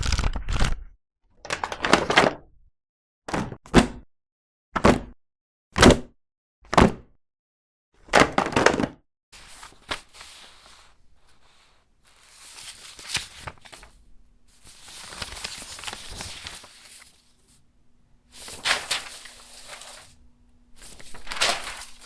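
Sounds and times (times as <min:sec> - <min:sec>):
paper sheets rustling onto floor: 0:09.4 - 0:17.6, 0:18.3 - 0:20.2, 0:20.8 - 0:22.0.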